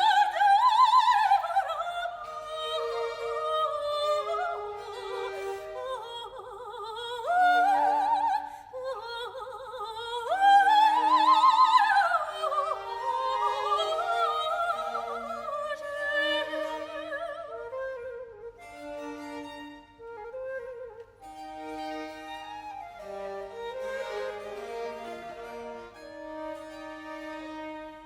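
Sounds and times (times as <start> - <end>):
woman singing operatically: 0.0 - 18.3
baroque orchestra: 1.6 - 6.3, 10.7 - 28.0.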